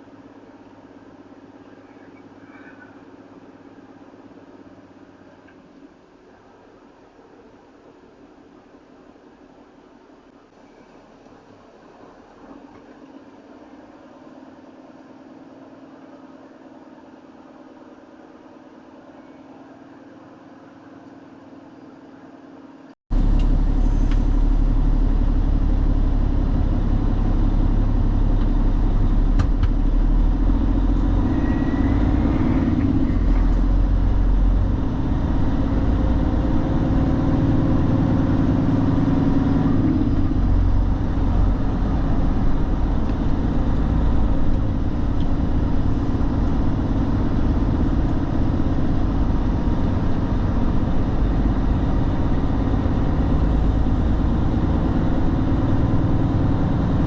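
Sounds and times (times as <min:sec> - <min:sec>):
truck engine droning: 0:23.1 - 0:57.0.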